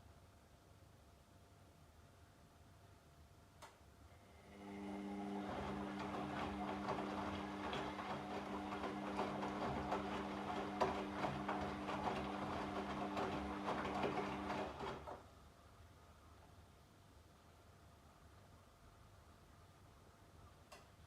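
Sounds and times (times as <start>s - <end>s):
washing machine motor hum: 4.2s - 15.2s
laundry tumbling knocks: 5.4s - 15.1s.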